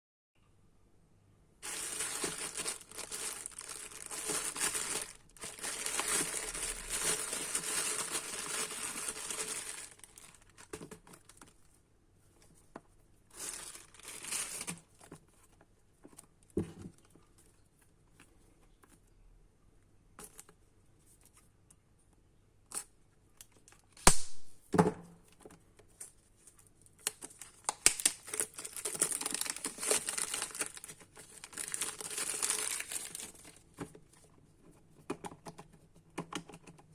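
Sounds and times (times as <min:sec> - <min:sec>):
packaging crinkling and tearing: 0:01.6 - 0:11.6, 0:13.3 - 0:15.1, 0:26.0 - 0:33.8.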